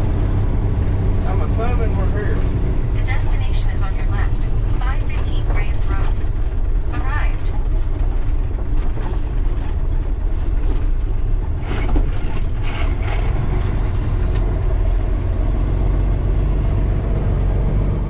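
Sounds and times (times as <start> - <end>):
truck diesel engine from inside cab: 0.0 - 18.0
cab rattles and knocks: 4.3 - 14.8.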